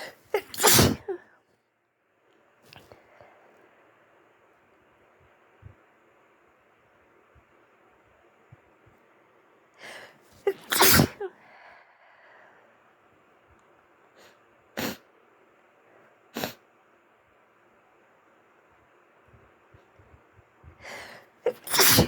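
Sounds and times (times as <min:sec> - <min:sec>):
person sneezing: 0:00.0 - 0:01.2, 0:09.9 - 0:11.4, 0:14.8 - 0:15.0, 0:16.4 - 0:16.6, 0:20.9 - 0:22.0
person sniffling: 0:00.0 - 0:01.2, 0:09.8 - 0:11.7, 0:20.8 - 0:22.0
quick breath in: 0:20.8 - 0:22.0.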